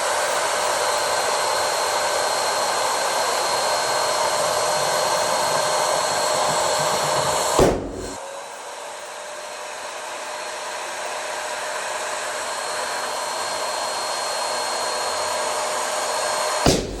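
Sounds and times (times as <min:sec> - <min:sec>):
blower motor whirring: 0:00.0 - 0:17.0
balloon popping: 0:03.9 - 0:08.2, 0:16.7 - 0:17.0.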